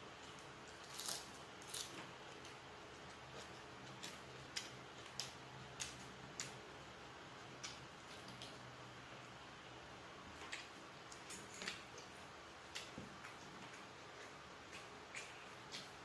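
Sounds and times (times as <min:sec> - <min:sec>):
faint steady hum: 0:00.0 - 0:16.0
person chewing food: 0:00.2 - 0:06.6, 0:10.3 - 0:16.0.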